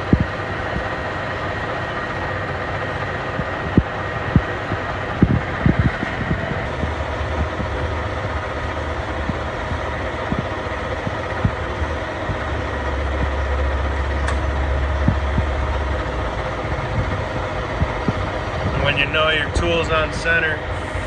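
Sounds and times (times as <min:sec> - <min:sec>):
metal lathe cutting: 0:20.7 - 0:21.0.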